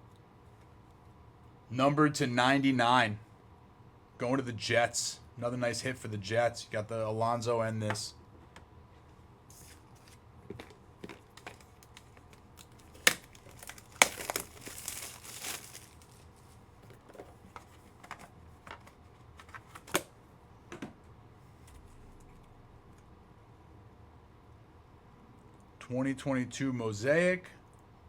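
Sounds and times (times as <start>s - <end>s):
plastic packaging crinkling: 9.6s - 17.0s
plastic cards clicking: 11.1s - 16.2s.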